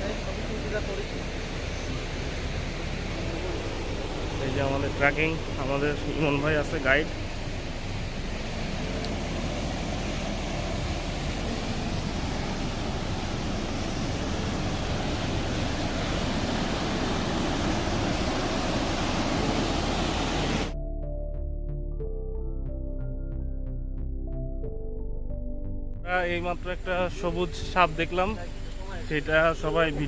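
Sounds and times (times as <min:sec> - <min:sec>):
stream rushing: 0:00.0 - 0:20.8.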